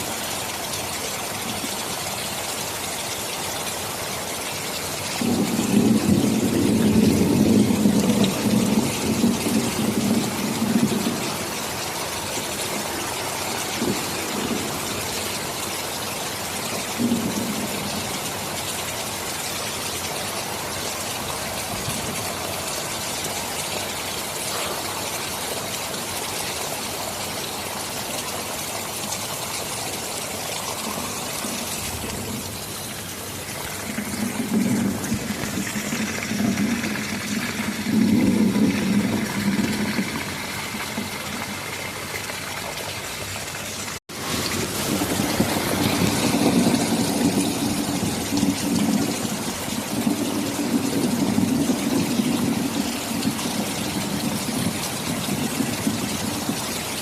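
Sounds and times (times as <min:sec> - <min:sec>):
heavy rain falling: 0:00.0 - 0:57.0
thunder rumbling: 0:05.2 - 0:16.0, 0:16.6 - 0:19.0, 0:30.4 - 0:42.0, 0:44.1 - 0:57.0.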